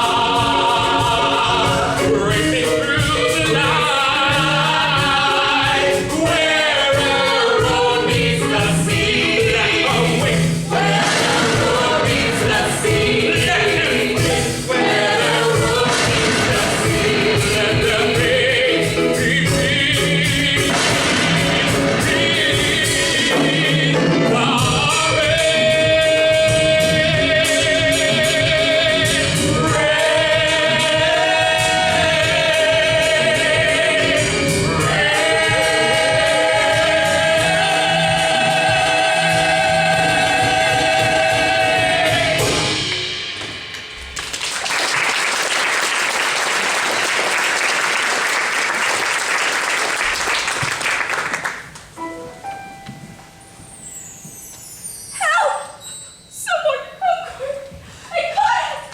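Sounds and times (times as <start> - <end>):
voices singing with accompaniment: 0.0 - 44.0
audience applause: 44.0 - 51.9.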